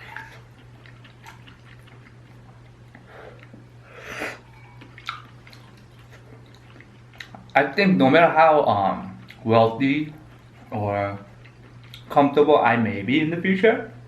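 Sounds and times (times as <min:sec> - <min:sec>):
noodles being slurped and chewed: 0:00.0 - 0:07.6
steady low hum: 0:00.0 - 0:14.0.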